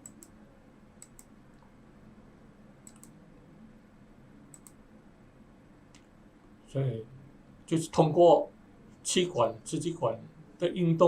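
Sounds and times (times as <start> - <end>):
faint sharp clicks: 0.0 - 0.4, 1.0 - 1.7, 2.8 - 3.2, 4.5 - 4.8, 5.9 - 6.2.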